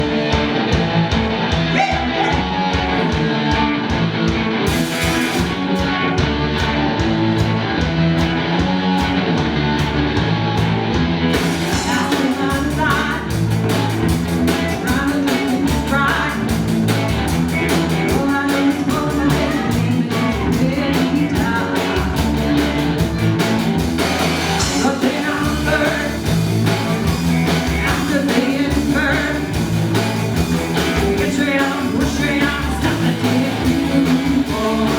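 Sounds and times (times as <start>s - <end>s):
live rock band playing: 0.0s - 34.9s
person singing: 1.7s - 3.5s, 11.7s - 13.4s, 14.5s - 16.6s, 18.0s - 22.9s, 24.6s - 26.4s, 27.7s - 29.7s, 30.7s - 34.9s.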